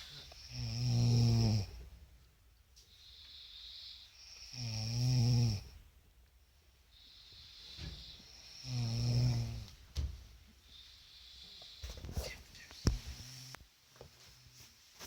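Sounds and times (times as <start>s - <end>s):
person snoring: 0.1s - 1.8s, 3.6s - 5.8s, 7.4s - 9.7s
breathy hissing of air: 2.8s - 5.8s, 6.7s - 9.7s, 10.5s - 13.6s.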